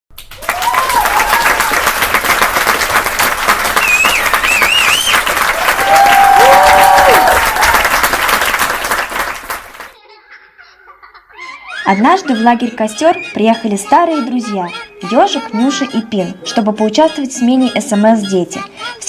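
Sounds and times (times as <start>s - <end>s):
audience applauding: 0.1s - 10.0s.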